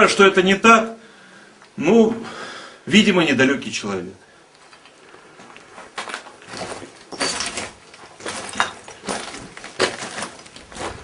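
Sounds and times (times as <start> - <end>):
footsteps crunching on debris: 4.6 - 11.0.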